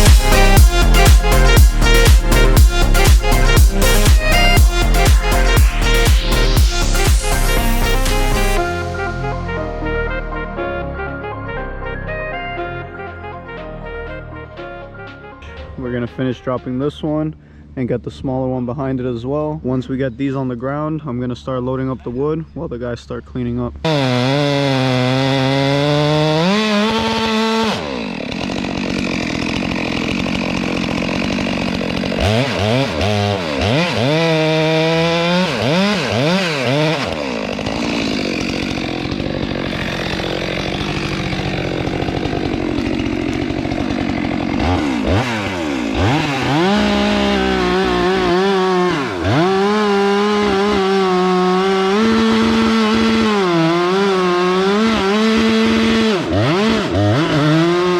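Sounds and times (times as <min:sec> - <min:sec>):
chainsaw revving and cutting: 0:00.0 - 0:09.5, 0:23.8 - 0:57.9.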